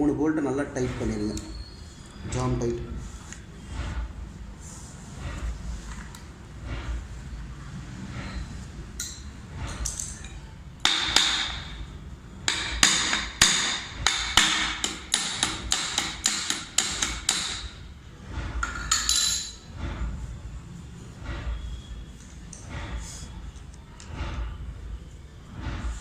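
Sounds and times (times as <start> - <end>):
hammer knocking on metal: 10.8 - 11.9, 12.5 - 17.8.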